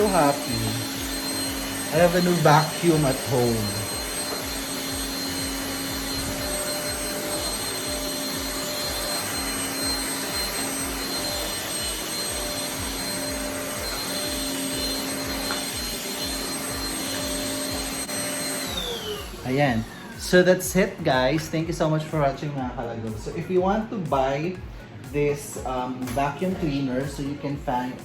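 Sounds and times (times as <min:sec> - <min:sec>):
handheld vacuum cleaner running: 0:00.0 - 0:21.9.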